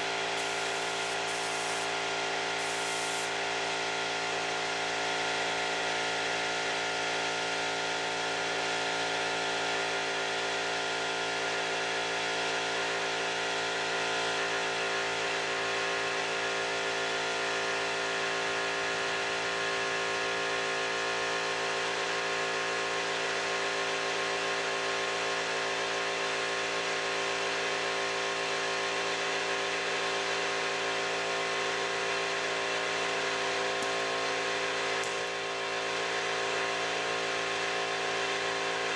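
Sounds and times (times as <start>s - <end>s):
air compressor humming: 0.0s - 3.4s
paint spray hissing: 0.4s - 1.9s, 2.6s - 3.3s.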